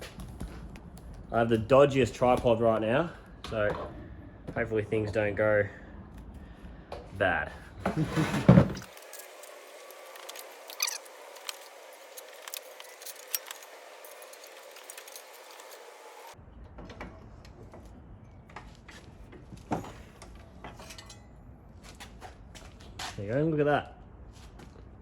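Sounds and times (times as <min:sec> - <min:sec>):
metal gasket clinking and rattling: 0:08.6 - 0:16.0, 0:20.6 - 0:21.3.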